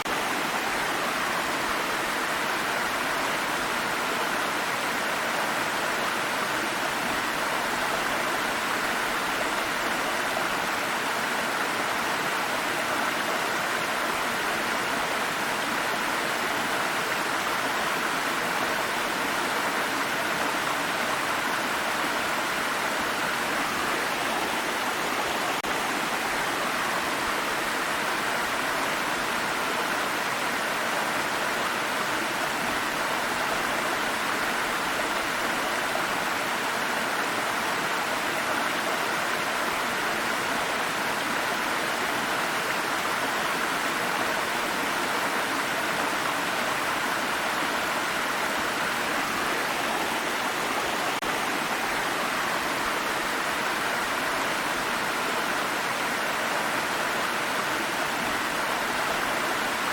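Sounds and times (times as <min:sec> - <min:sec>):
stream splashing over rocks: 0:00.0 - 0:59.9.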